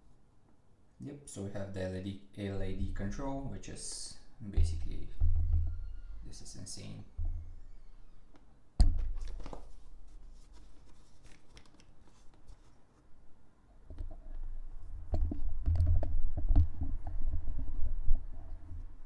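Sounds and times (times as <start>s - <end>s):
low bumps and clicks: 7.1s - 7.6s, 13.9s - 19.0s.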